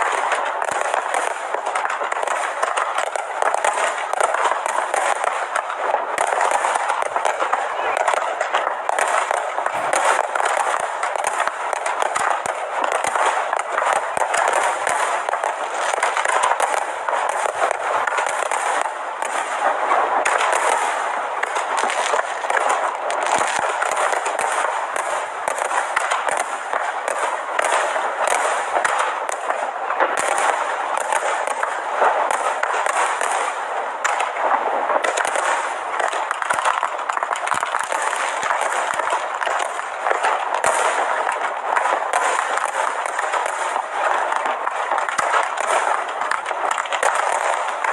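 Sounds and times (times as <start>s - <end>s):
fireworks bangs and crackles: 0.0s - 47.9s.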